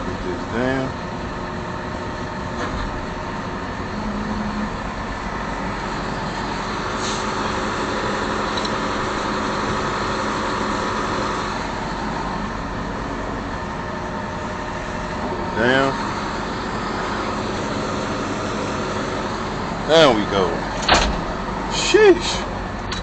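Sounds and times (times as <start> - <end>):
excavator diesel engine running: 0.0 - 23.0.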